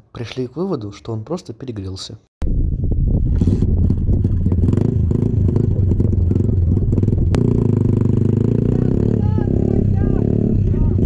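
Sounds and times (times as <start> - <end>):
atv engine running: 3.4 - 11.0.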